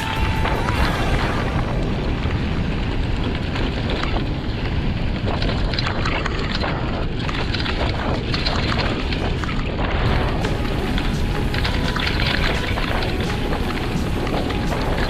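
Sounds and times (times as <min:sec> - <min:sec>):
wind buffeting microphone: 0:00.0 - 0:15.0
bike clicks and rattles: 0:02.7 - 0:15.0.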